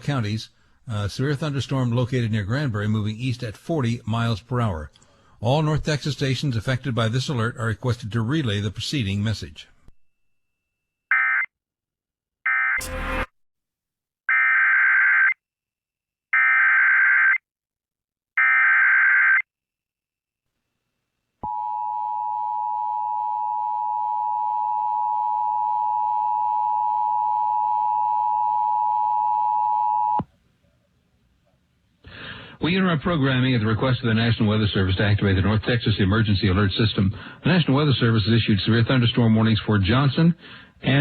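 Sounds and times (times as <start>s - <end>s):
steady two-tone attention signal: 12.8s - 13.3s.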